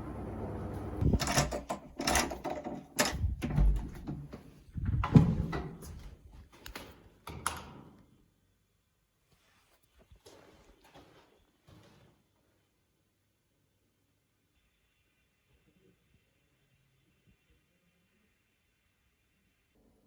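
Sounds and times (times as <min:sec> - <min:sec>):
knocks and clatters: 0:01.0 - 0:06.1.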